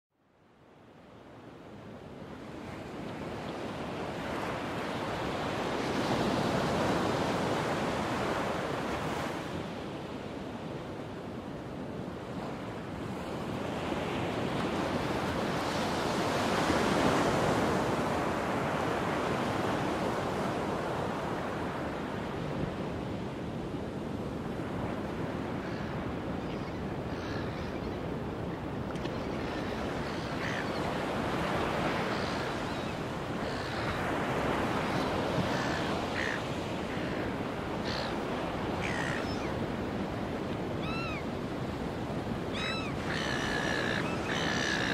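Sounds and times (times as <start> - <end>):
ocean waves breaking: 28.1 - 44.9.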